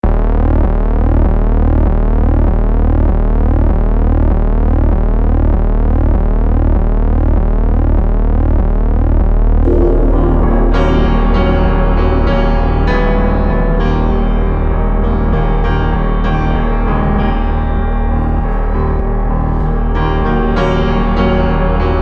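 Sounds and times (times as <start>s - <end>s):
synthesized tone with sweeping glides: 9.7s - 16.3s.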